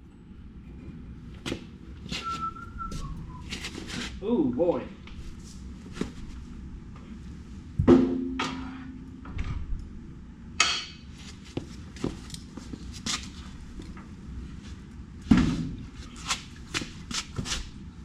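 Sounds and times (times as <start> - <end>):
metal clang: 7.8 - 9.5
metal knocks: 7.8 - 9.5.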